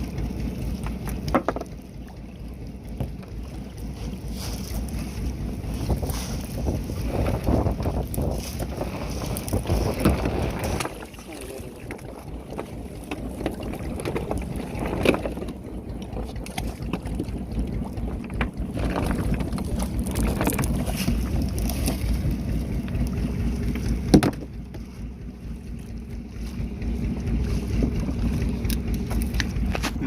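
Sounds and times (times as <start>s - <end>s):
steady low rumble: 0.0s - 30.0s
wind buffeting microphone: 1.8s - 30.0s.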